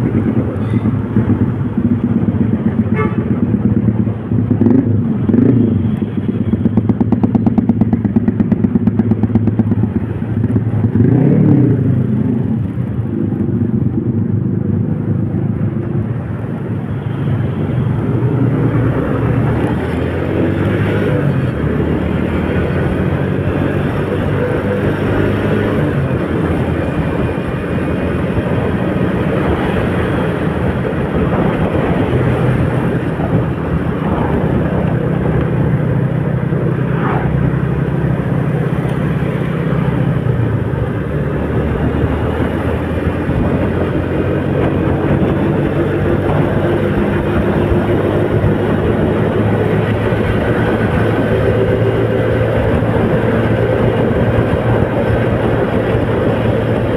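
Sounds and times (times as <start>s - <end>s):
motorcycle engine running: 0.0s - 56.9s
wind and heavy rain: 25.1s - 56.9s.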